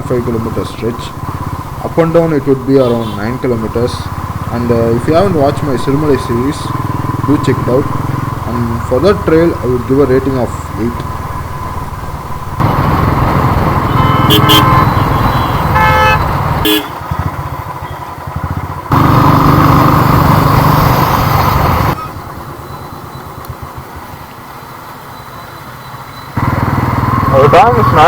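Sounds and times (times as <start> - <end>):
motorcycle engine and road noise: 0.0 - 28.0
vehicle horns honking: 2.7 - 3.4, 13.7 - 18.2.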